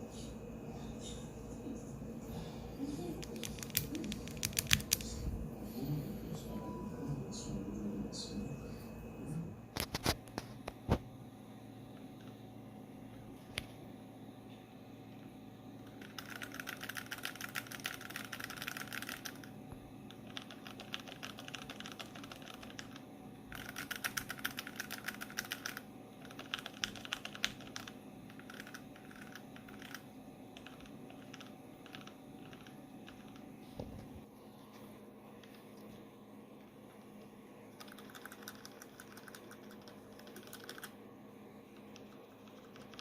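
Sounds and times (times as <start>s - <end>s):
mechanical keyboard typing: 3.2s - 5.1s, 15.8s - 19.5s, 20.1s - 33.5s, 37.8s - 40.9s, 41.8s - 43.0s.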